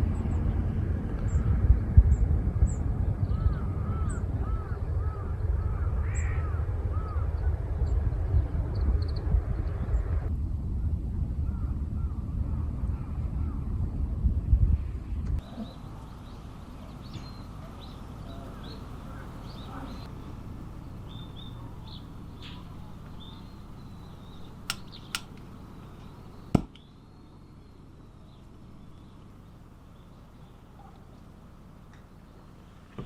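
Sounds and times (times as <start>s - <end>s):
steady outdoor rush: 0.0s - 33.0s
bird chirps: 15.4s - 33.0s
light clicks: 24.6s - 26.1s.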